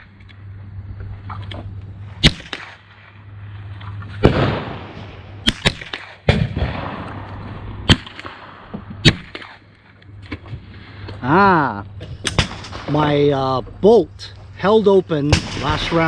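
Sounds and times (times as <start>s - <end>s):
rolling gunshot echo: 2.2s - 3.1s, 4.1s - 11.0s, 12.0s - 13.2s, 15.3s - 16.0s
rifle shots: 2.2s - 3.2s, 4.2s - 10.0s, 12.2s - 13.3s, 15.3s - 16.0s.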